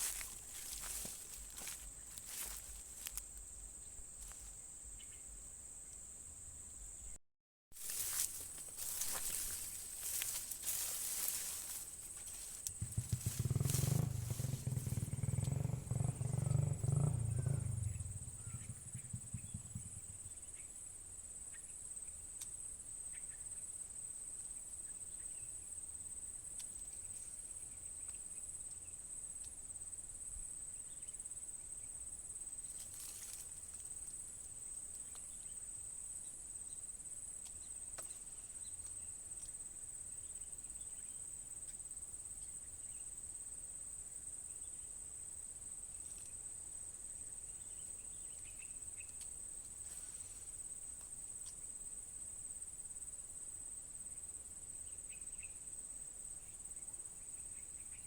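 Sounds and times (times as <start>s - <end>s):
insect chorus: 0.0s - 7.2s, 7.8s - 58.0s
loud low rumble: 12.8s - 19.8s.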